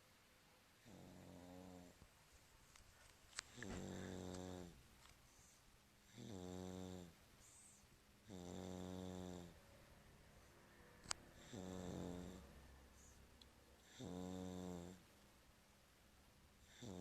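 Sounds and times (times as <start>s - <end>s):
baby snoring: 3.5s - 4.8s, 5.4s - 9.6s, 11.4s - 13.2s, 13.8s - 15.0s, 16.7s - 17.0s.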